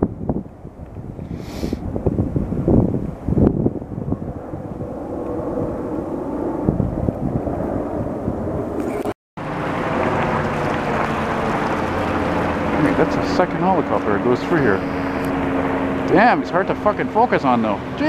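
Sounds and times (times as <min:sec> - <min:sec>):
helicopter flying over: 0:00.0 - 0:01.2, 0:01.8 - 0:18.0
wind buffeting microphone: 0:00.0 - 0:18.0
low outdoor rumble: 0:09.4 - 0:18.0.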